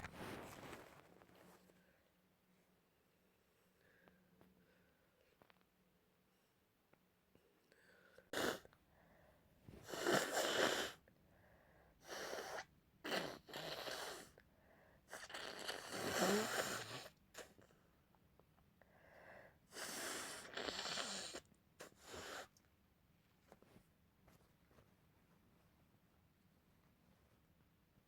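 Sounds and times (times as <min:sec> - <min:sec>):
person blowing nose: 0:08.3 - 0:08.7, 0:09.8 - 0:11.0, 0:12.0 - 0:14.3, 0:15.1 - 0:17.6, 0:19.7 - 0:22.5.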